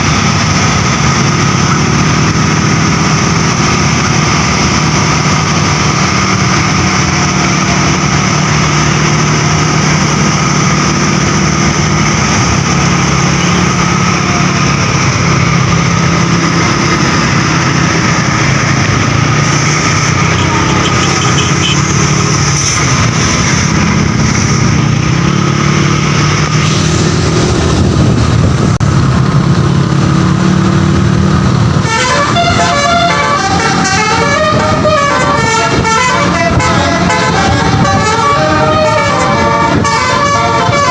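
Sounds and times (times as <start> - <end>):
vehicle engine and road noise: 0.0 - 40.9
bus horn playing melody: 20.2 - 21.9, 31.8 - 40.9.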